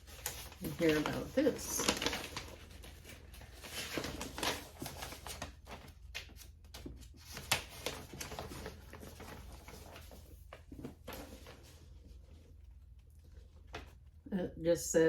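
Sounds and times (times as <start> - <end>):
paper pages rustling: 0.0 - 14.2.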